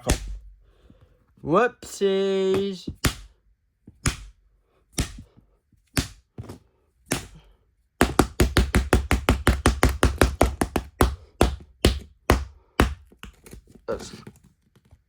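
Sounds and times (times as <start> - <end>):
hand tool tapping a phone: 8.0 - 13.4.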